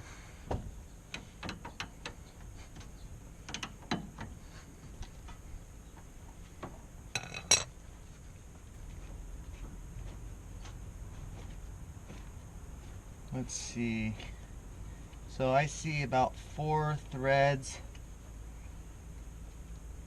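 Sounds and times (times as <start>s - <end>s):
metal clank: 7.2s - 7.7s.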